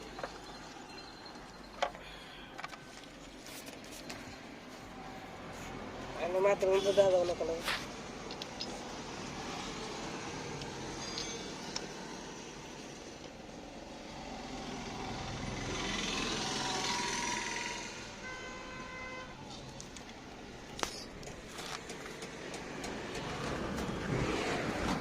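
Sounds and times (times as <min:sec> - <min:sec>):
vehicle passing by: 0:13.9 - 0:18.2, 0:22.6 - 0:25.0.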